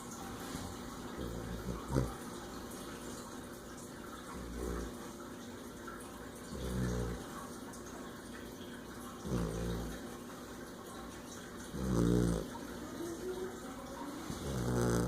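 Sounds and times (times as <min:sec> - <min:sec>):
low snores: 0:01.2 - 0:02.2, 0:04.3 - 0:05.0, 0:06.5 - 0:07.3, 0:09.2 - 0:10.0, 0:11.7 - 0:12.6, 0:14.3 - 0:15.0.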